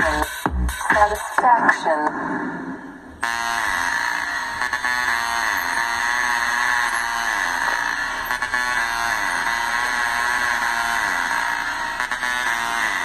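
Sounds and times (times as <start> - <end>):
buzzy electronic tone sliding down: 3.1 - 13.0.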